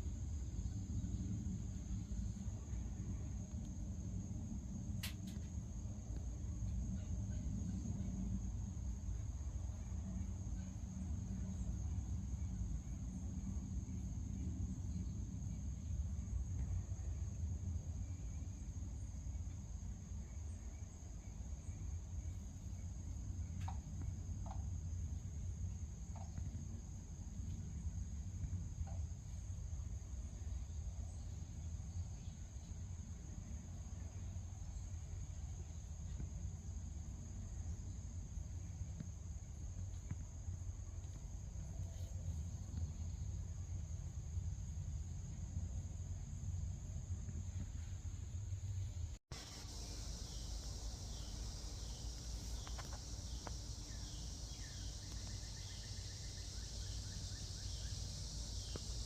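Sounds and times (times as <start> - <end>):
crickets chirring: 0.0 - 59.0
insects trilling: 49.3 - 59.0.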